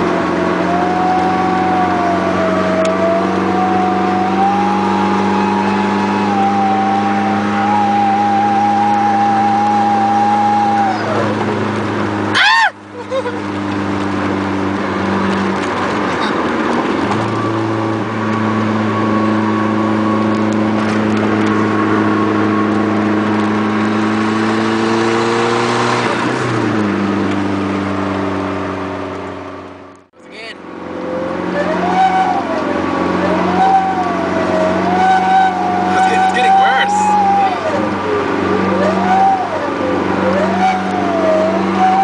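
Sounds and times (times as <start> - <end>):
droning and whistling exhaust: 0.0 - 11.4, 17.2 - 23.8, 30.8 - 42.0
turbocharged car engine running: 0.0 - 42.0.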